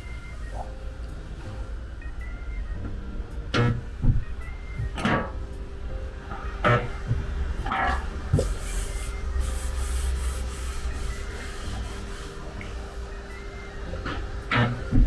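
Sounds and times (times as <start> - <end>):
sanding-like rubbing: 7.7 - 14.9.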